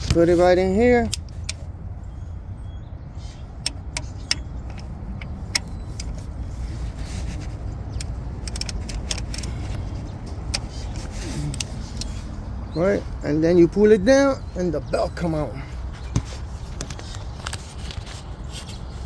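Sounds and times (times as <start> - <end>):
wrench clicking on metal: 8.0 - 9.7.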